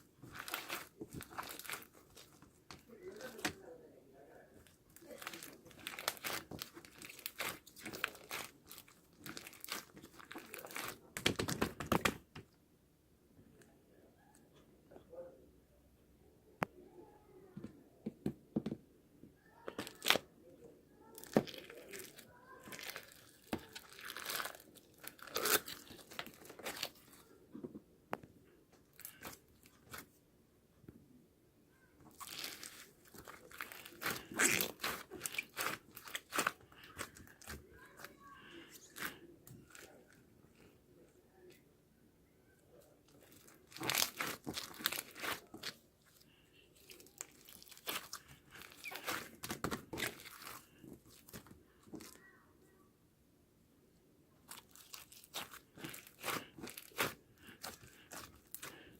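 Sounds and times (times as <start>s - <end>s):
plastic packaging crinkling: 0.0s - 3.6s, 4.9s - 12.2s, 32.1s - 37.6s, 43.2s - 52.1s, 54.5s - 58.9s.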